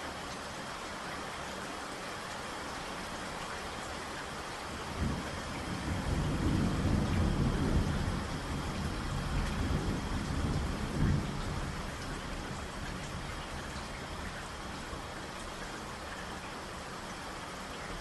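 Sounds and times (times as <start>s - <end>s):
heavy rain: 0.0s - 18.0s
thunder rumble: 4.9s - 14.2s.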